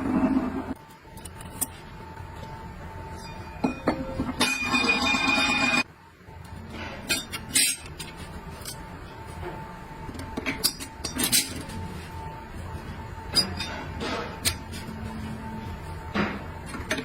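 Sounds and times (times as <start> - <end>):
metal parts clinking together: 10.5 - 11.7.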